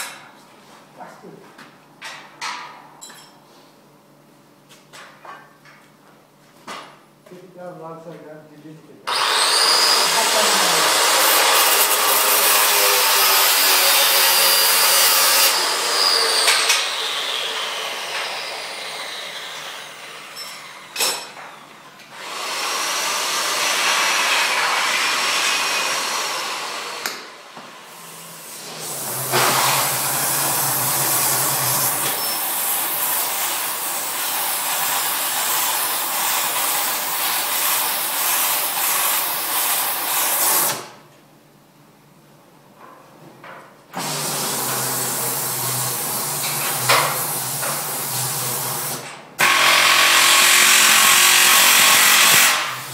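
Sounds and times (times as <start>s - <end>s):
power tool hissing noise: 9.1s - 21.0s, 22.1s - 41.0s, 44.0s - 52.9s.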